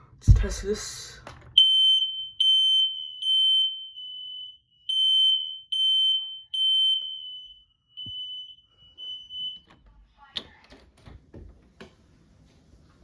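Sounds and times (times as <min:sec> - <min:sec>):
smoke alarm high beeps: 0:01.6 - 0:09.8.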